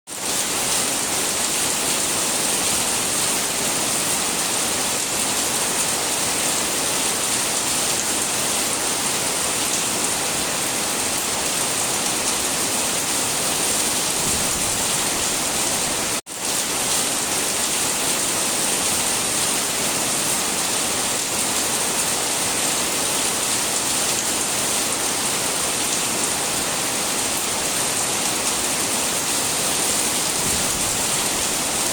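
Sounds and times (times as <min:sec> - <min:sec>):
heavy rain hissing: 0:08.7 - 0:31.9.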